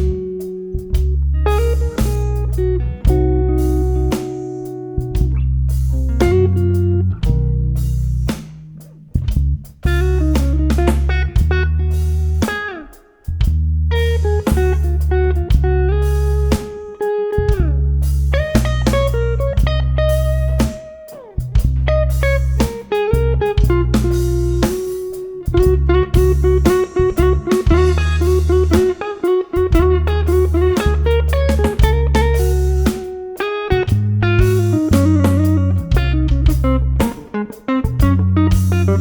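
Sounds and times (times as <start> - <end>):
bass guitar: 0.0 - 39.0
drum kit: 0.0 - 39.0
lead guitar bent notes: 18.5 - 39.0.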